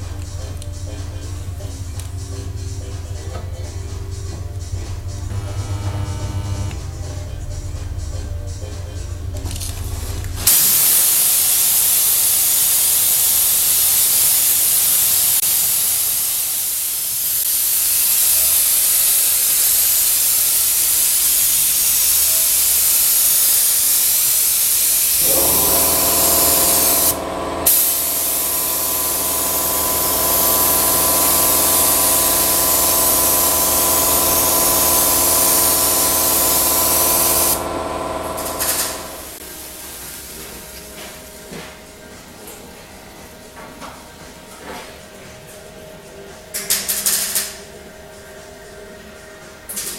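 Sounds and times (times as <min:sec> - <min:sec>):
steady multi-tone hum: 0:00.0 - 0:16.0, 0:24.6 - 0:46.6
spray gun hissing: 0:10.4 - 0:40.2.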